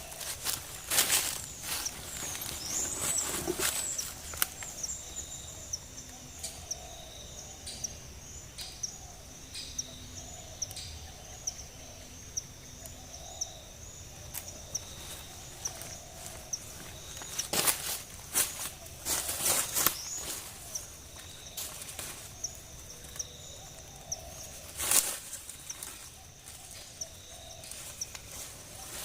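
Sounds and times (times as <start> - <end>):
steady high hum of insects: 0.0 - 29.0
knocks and rustles: 0.3 - 4.5.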